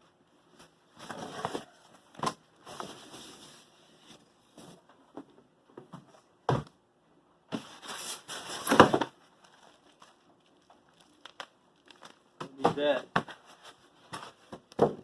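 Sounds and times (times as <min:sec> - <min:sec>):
packaging rustling and scraping: 0:00.9 - 0:04.8, 0:07.5 - 0:14.8
packaging clicks: 0:10.0 - 0:12.2.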